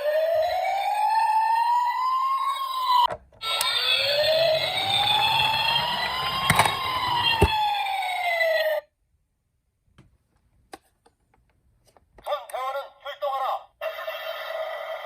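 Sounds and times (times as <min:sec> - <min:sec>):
police sirens wailing: 0:00.0 - 0:08.8.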